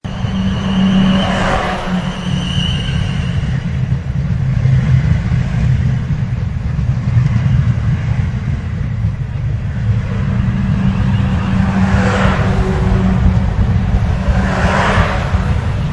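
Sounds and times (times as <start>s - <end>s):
thin high whine: 0.0s - 3.9s, 9.3s - 15.9s
rush of higher noise: 0.0s - 4.6s, 7.5s - 15.9s
train rumbling: 0.0s - 15.9s.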